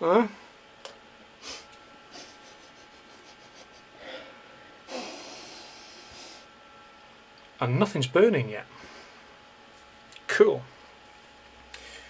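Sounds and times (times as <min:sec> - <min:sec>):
breathy exhale: 0:04.0 - 0:06.5.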